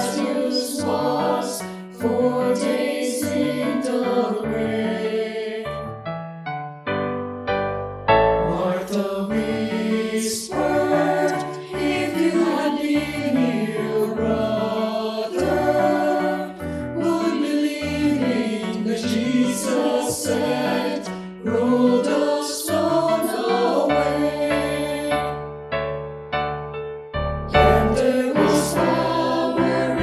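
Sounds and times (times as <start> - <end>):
choir singing worship song: 0.0 - 5.9, 8.4 - 25.4, 27.6 - 30.0
instrumental accompaniment: 21.6 - 30.0.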